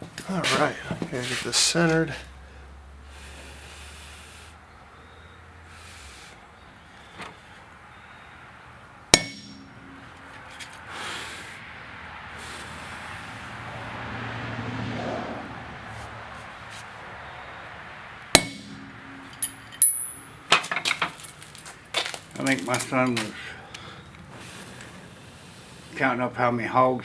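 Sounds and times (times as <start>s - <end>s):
hammer blows on steel: 9.1s - 10.2s, 18.4s - 20.4s
low rushing noise: 11.6s - 18.1s
light metallic clinks: 18.4s - 21.2s.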